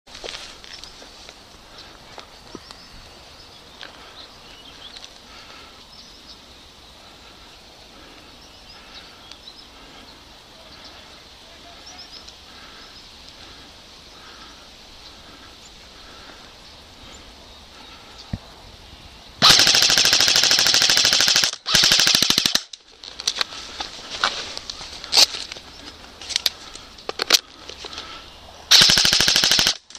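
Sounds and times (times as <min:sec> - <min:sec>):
quiet outdoor background: 0:00.1 - 0:29.9
airsoft gun firing bursts: 0:19.4 - 0:22.7, 0:28.7 - 0:29.9.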